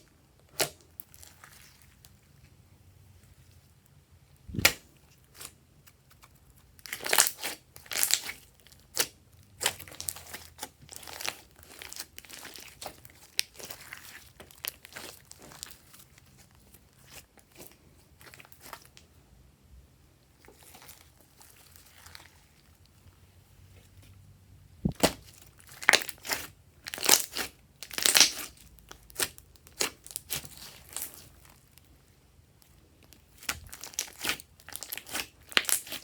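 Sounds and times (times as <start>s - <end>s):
slime crackling and popping: 4.5s - 5.5s, 24.8s - 31.2s, 33.3s - 36.0s.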